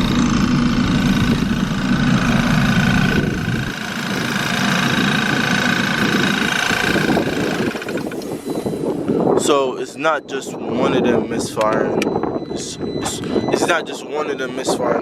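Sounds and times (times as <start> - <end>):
car engine misfiring: 0.0 - 9.4
high-pitched whine: 0.0 - 9.6.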